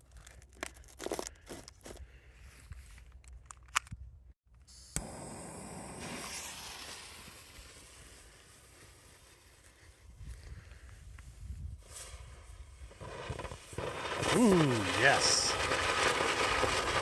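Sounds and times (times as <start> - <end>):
firework fountain hissing: 4.8 - 9.5, 11.9 - 17.0
firework sharp crack: 5.0 - 7.6, 13.0 - 17.0.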